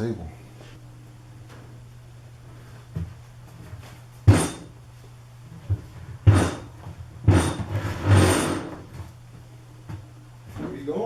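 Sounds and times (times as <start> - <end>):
board scraping on table: 7.3 - 8.9.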